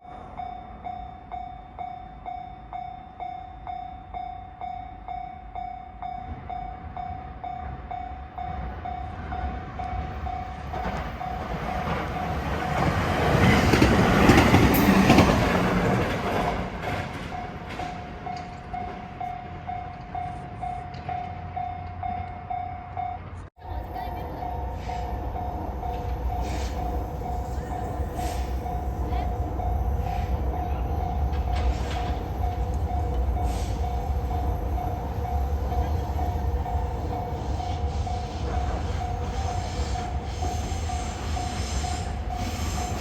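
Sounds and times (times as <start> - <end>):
train rumbling past: 0.0 - 43.0
level-crossing bell ringing: 17.3 - 39.5.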